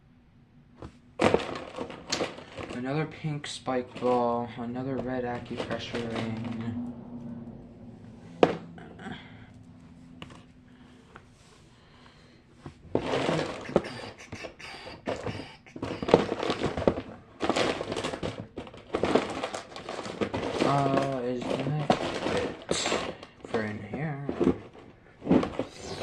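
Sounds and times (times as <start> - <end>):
rustling: 0.8 - 26.0
plastic toys clicking and clattering: 1.2 - 7.0, 12.9 - 26.0.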